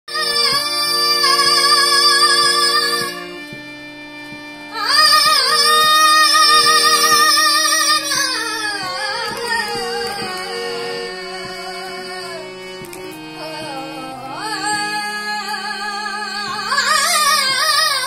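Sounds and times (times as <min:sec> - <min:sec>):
held accompanying notes: 0:00.1 - 0:18.0
high voice singing with vibrato: 0:00.1 - 0:18.0.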